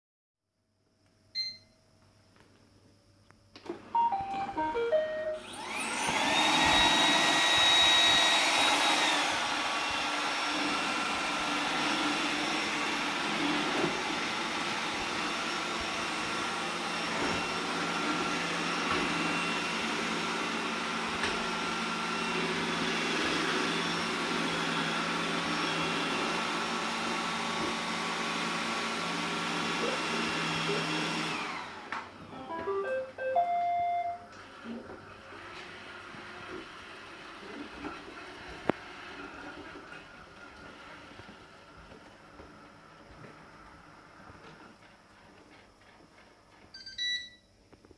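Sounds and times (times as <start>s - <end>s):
short beeps: 1.4s - 1.8s, 4.0s - 5.4s, 32.4s - 34.3s
robot vacuum motor whirring: 5.4s - 31.7s.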